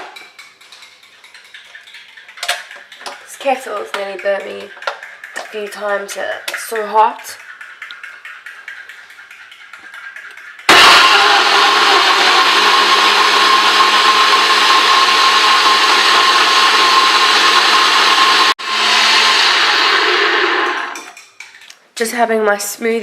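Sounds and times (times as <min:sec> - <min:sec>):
electric blender running: 0:10.7 - 0:21.0.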